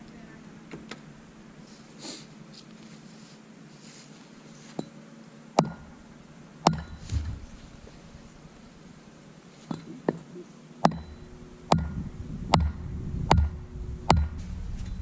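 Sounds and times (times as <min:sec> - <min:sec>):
faint background noise: 0:00.0 - 0:15.0
faint rustling: 0:01.6 - 0:05.0, 0:06.9 - 0:10.6
dull low thump: 0:06.7 - 0:07.8, 0:10.9 - 0:15.0
low thump: 0:06.7 - 0:07.8.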